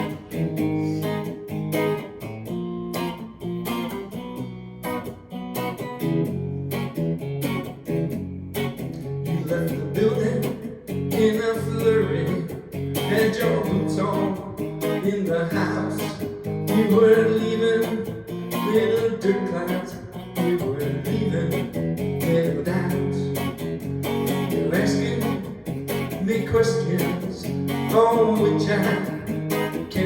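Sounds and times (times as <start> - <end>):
strummed guitar chords: 0.0 - 30.0.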